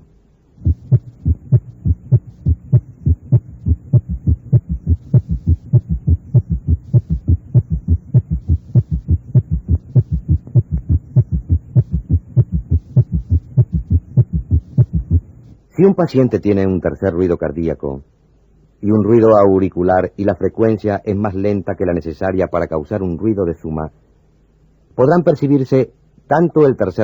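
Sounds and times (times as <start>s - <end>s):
faint low hum: 0.0s - 27.0s
heartbeat thumps: 0.6s - 15.5s.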